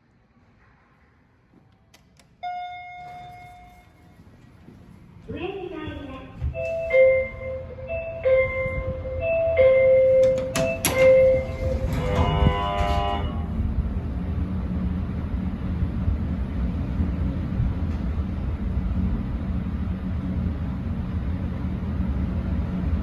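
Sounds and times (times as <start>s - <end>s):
click: 1.7s - 2.3s
door-closing buzzer: 10.2s - 13.5s.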